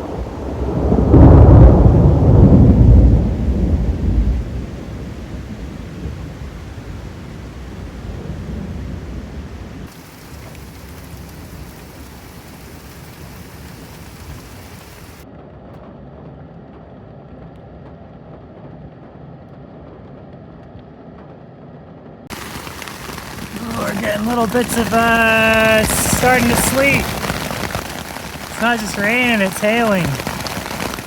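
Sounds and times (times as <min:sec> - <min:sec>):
low thunder rumble: 0:00.0 - 0:15.2, 0:22.3 - 0:31.0
steady rain: 0:00.0 - 0:15.2, 0:22.3 - 0:31.0.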